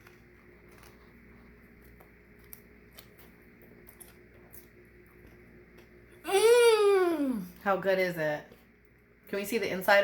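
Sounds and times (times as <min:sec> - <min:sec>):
faint chewing crunches: 0:00.0 - 0:06.2
low room hum: 0:00.0 - 0:10.0.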